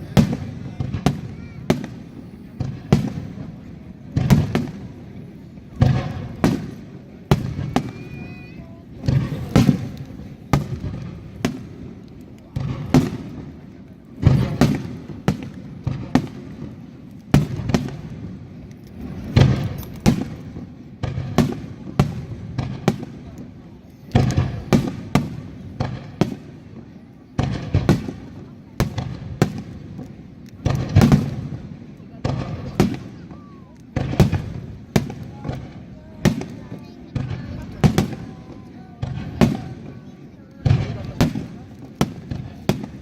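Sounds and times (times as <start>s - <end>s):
fireworks shells bursting: 17.2s - 21.7s.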